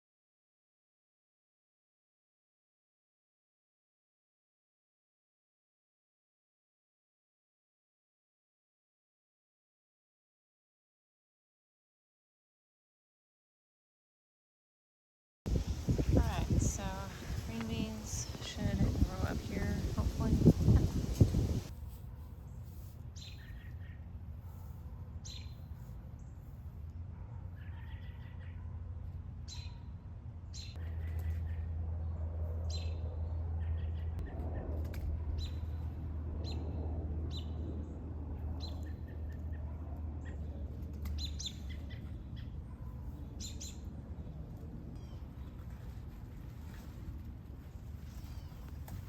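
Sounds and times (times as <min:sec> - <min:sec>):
birds chirping: 0:15.5 - 0:21.7
low steady hum: 0:15.5 - 0:21.7.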